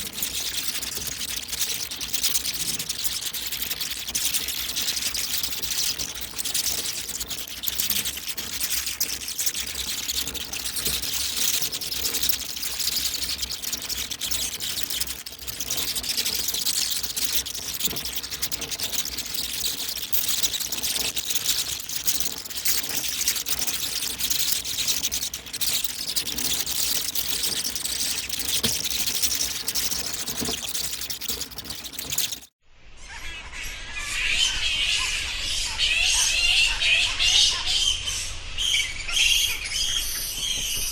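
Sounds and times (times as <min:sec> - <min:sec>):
bats chittering and clicking: 0:00.0 - 0:32.6.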